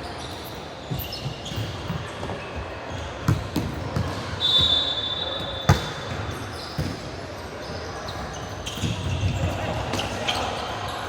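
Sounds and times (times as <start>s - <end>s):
basketball bouncing in gym: 0.9s - 4.8s, 5.4s - 7.2s, 8.1s - 10.1s.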